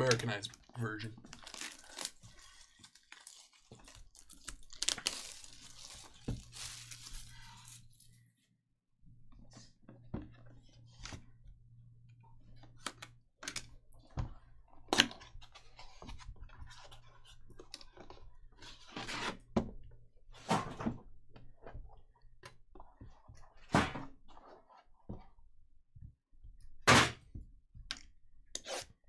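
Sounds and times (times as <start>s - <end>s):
packaging rustling: 0.6s - 8.2s.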